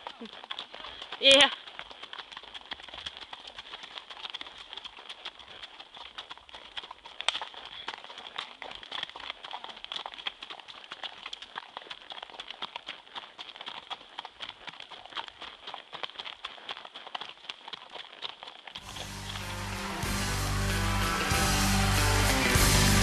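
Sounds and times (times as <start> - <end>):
horse hooves clip-clopping: 0.0 - 23.0
high-pitched buzz: 18.8 - 23.0.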